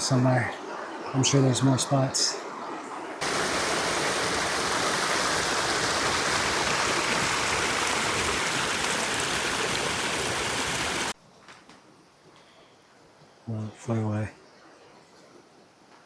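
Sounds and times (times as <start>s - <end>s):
creek water rushing over rocks: 3.2s - 11.2s.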